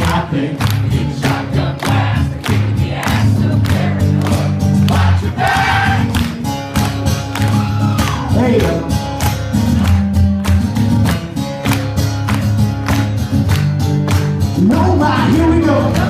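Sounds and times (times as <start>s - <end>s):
crowd singing along: 0.0s - 6.3s
acoustic guitar strumming: 0.0s - 16.0s.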